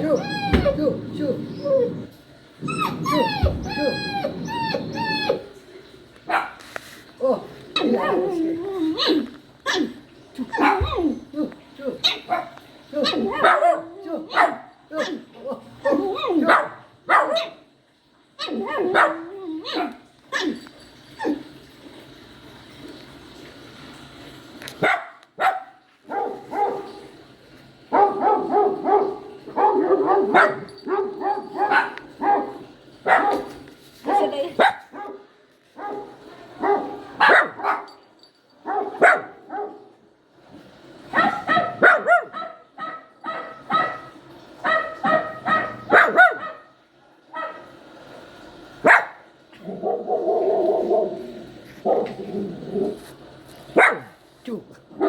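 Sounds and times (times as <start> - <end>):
puppy whining and yelping: 0.0 - 5.6.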